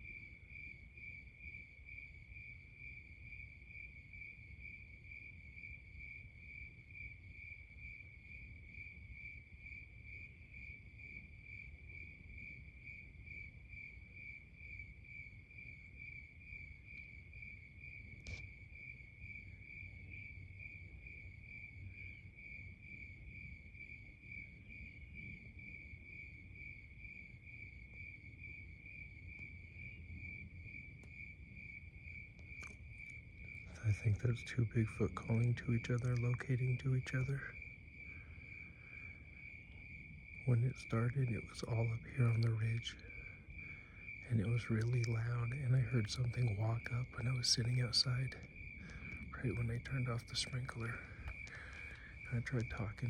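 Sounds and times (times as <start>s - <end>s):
crickets chirping: 0.0s - 53.0s
low background rumble: 29.6s - 53.0s.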